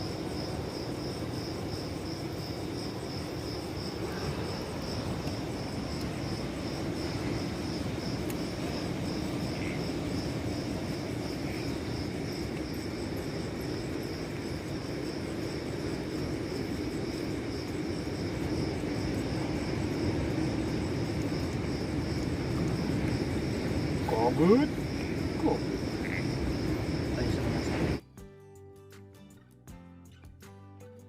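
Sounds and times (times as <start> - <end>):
distant surf rumble: 0.0 - 28.0
crickets chirping: 0.0 - 28.2.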